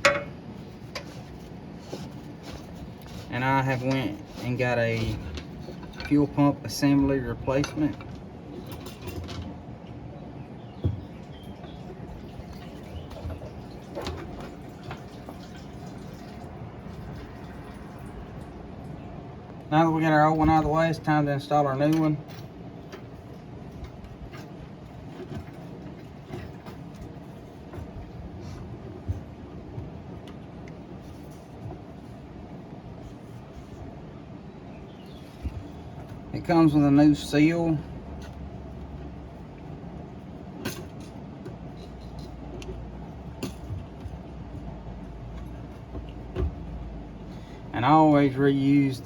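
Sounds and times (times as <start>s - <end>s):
background hum: 0.0s - 49.0s.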